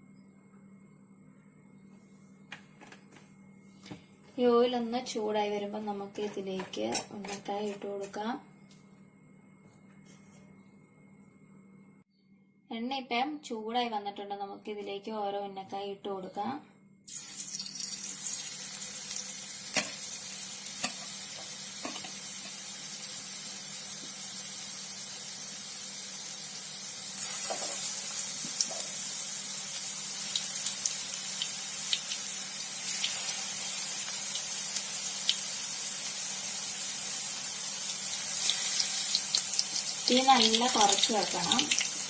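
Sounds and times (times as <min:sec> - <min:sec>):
hot oil sizzling in a frying pan: 0:17.1 - 0:42.0.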